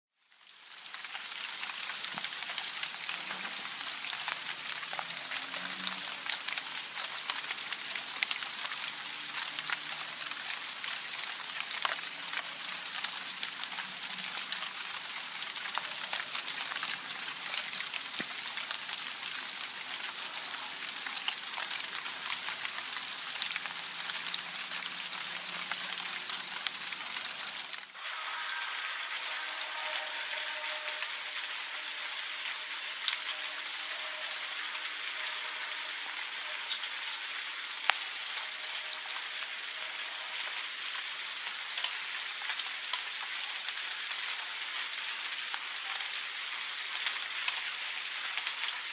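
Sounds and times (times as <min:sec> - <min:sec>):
raindrops ticking on surfaces: 0:00.2 - 0:48.9
heavy rain falling: 0:00.3 - 0:48.9
steady high-pitched tone: 0:28.0 - 0:36.7.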